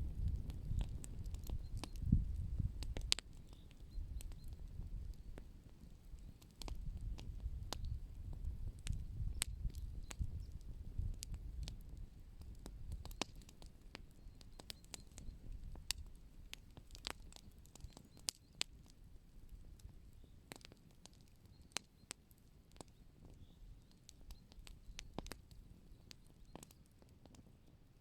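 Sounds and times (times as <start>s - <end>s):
wood fire crackling: 0.0s - 28.0s.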